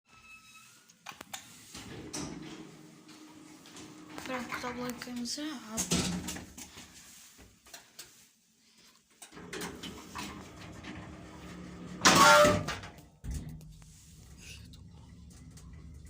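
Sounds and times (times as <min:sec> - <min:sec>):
elevator squeal: 0:00.0 - 0:00.9.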